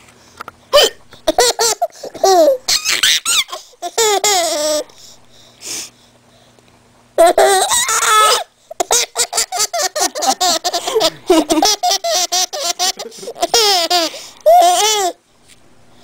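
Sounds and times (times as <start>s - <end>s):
baby laughing: 0.8s - 5.0s, 7.2s - 15.2s.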